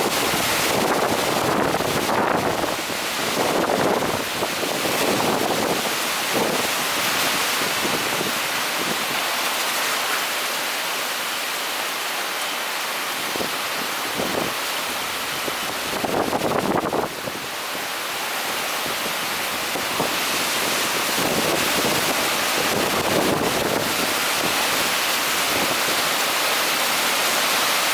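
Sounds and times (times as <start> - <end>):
wind gusts buffeting microphone: 0.0 - 9.3, 13.3 - 17.5, 18.8 - 26.3
wind and rain hiss: 0.0 - 27.9.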